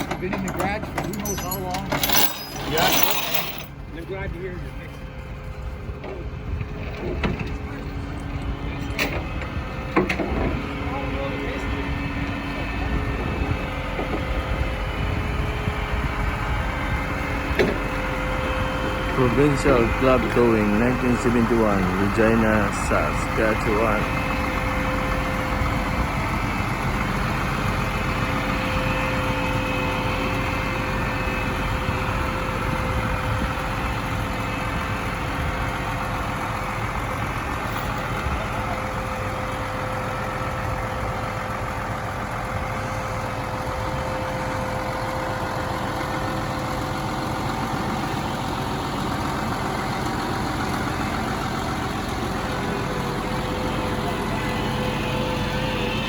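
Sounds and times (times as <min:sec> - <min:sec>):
truck engine idling: 0:00.0 - 0:56.0.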